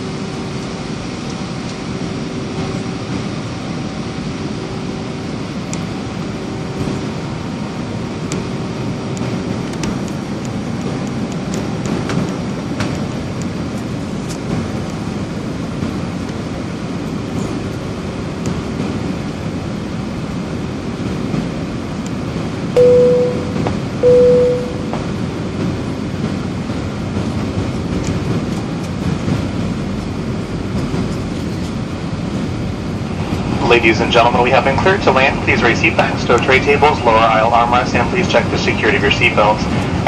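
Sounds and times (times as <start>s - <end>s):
airplane cabin rumble: 0.0s - 40.0s.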